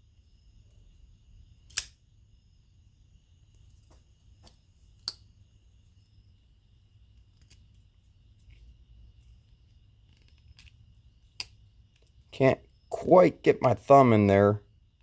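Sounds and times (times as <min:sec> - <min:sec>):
pocket knife blade clicking: 0:01.7 - 0:01.9
sharp knife snap: 0:01.7 - 0:02.0.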